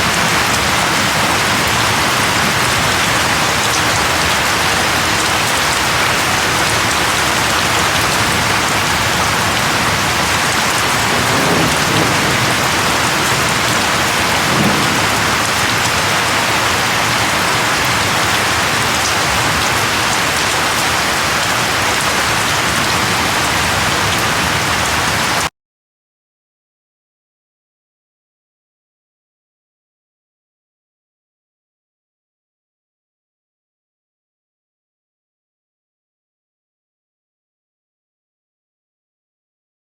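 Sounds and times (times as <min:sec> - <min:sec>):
heavy rain falling: 0:00.0 - 0:25.5.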